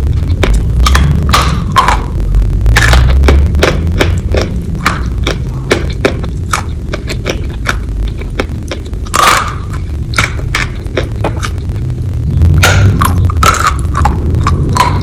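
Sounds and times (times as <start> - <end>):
crunchy wet chewing: 0.0 - 11.9, 12.5 - 15.0
low rumble: 0.0 - 15.0.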